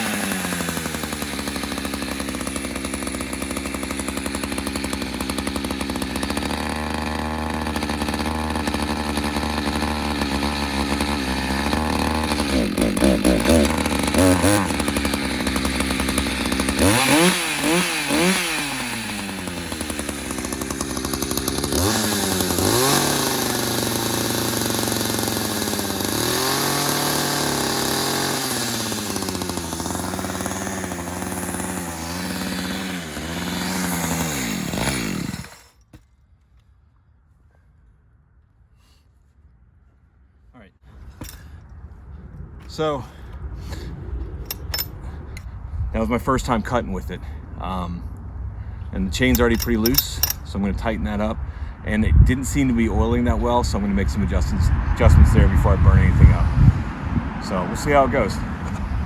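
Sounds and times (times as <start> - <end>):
chainsaw idling and revving: 0.0 - 36.0, 44.5 - 45.0, 49.2 - 51.5, 52.1 - 59.0.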